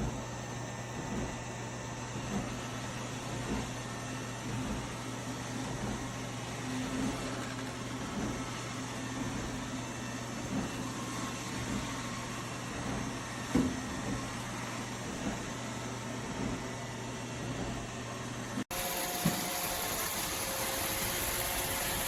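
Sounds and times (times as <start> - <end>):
robot vacuum motor hum: 18.7 - 22.0.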